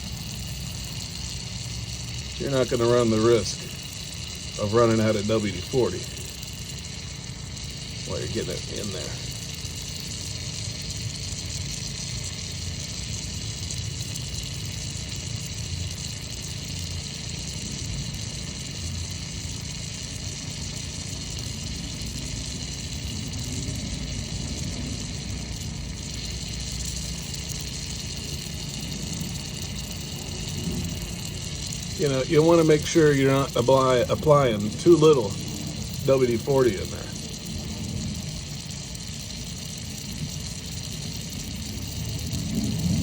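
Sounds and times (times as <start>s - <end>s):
aerosol can spraying: 0.0s - 43.0s
steady low rumble: 20.3s - 43.0s.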